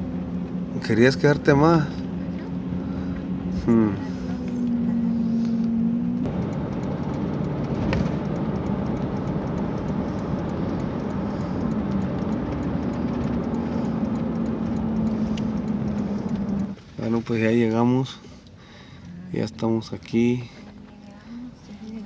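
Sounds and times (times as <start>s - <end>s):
car engine hum: 0.0s - 22.0s
road noise: 0.0s - 22.0s.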